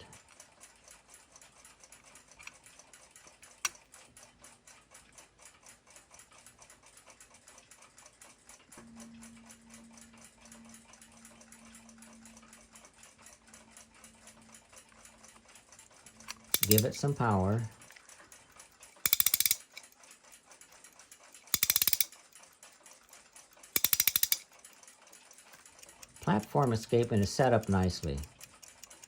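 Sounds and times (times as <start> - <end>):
clock ticking quickly: 0.0 - 29.0
sharper click: 16.3 - 17.2, 19.1 - 19.9, 21.6 - 22.1, 23.8 - 24.5.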